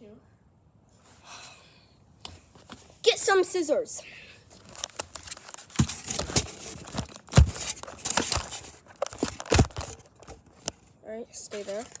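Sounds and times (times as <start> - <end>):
packaging crinkling and tearing: 4.6 - 10.8, 11.5 - 12.0
dull knocks of boxes: 5.7 - 8.5.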